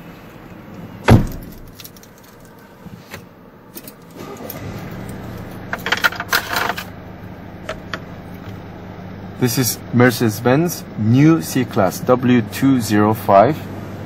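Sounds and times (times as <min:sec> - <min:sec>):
car door shutting: 0:01.0 - 0:01.8
keys jangling: 0:01.4 - 0:02.6
low engine hum: 0:02.6 - 0:14.0.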